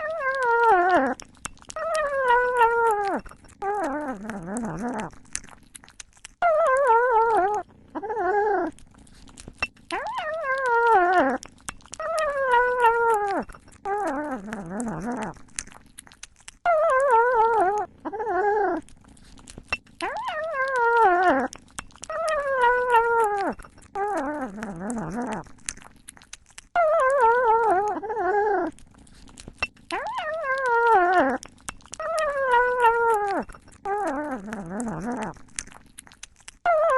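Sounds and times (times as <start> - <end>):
cat meowing: 20.0 - 21.5, 22.1 - 25.4.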